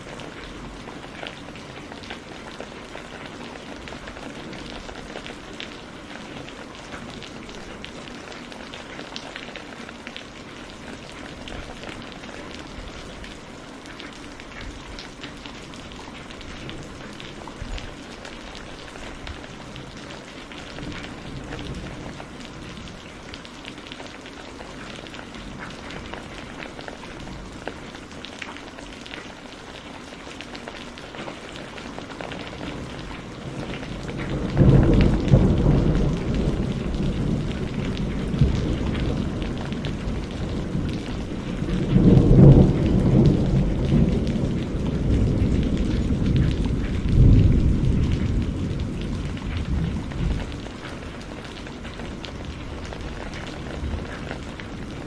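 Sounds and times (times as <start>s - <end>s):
rain pattering on hard surfaces: 0.0s - 55.0s
thunder rumble: 32.5s - 55.0s.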